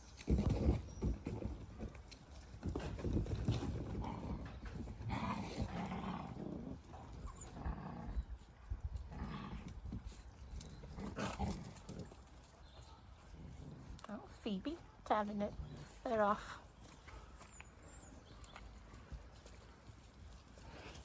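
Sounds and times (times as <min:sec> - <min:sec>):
puppies scuffling and playing: 0:00.0 - 0:14.9, 0:15.6 - 0:21.0
dog noises: 0:03.9 - 0:21.0.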